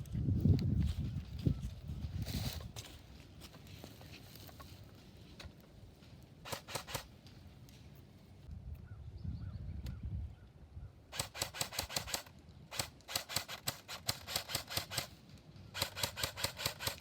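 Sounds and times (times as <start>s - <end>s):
airsoft gun firing bursts: 6.4s - 7.1s, 11.1s - 17.0s.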